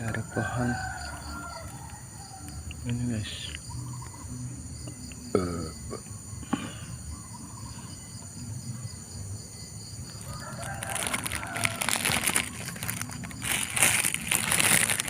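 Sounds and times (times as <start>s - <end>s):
rooster crowing: 0.1s - 2.8s, 10.0s - 12.8s
sharp crackling clicks: 1.6s - 4.2s, 10.6s - 15.0s.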